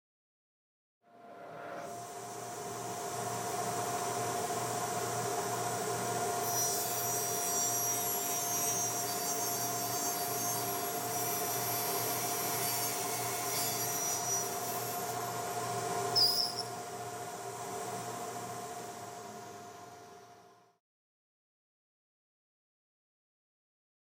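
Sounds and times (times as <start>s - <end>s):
sharp knock and squeak: 16.2s - 16.8s.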